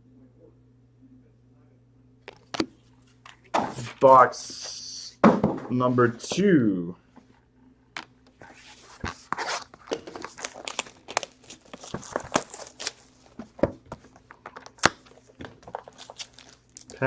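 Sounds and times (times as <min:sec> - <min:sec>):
shrink wrap crinkling and tearing: 0:09.0 - 0:13.4, 0:14.0 - 0:17.0.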